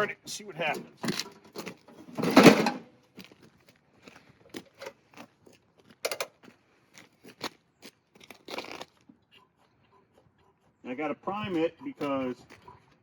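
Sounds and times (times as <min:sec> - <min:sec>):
clicks and knocks from controls: 0:00.7 - 0:02.9.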